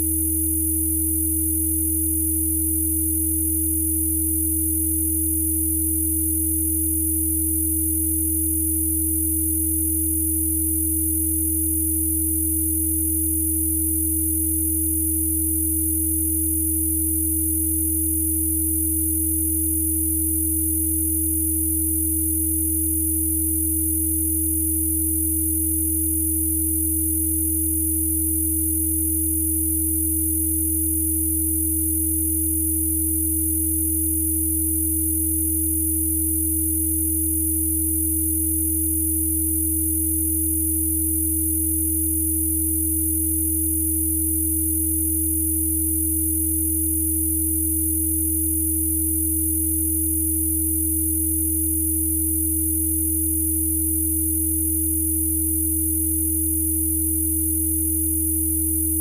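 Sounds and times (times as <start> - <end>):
steady middle sine tone: 0.0 - 59.0.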